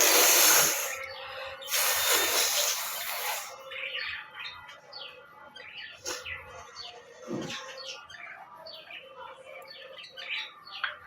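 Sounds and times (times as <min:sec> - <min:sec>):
person blowing nose: 0:00.0 - 0:00.9, 0:01.7 - 0:03.5
small birds chirping: 0:00.0 - 0:11.0.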